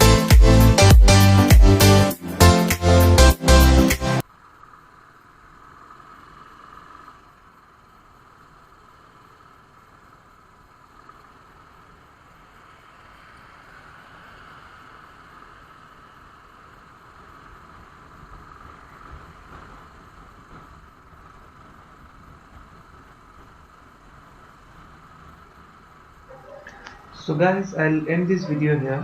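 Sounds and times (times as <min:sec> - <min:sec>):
motorcycle engine running: 0:03.2 - 0:28.7
wind: 0:04.2 - 0:29.0.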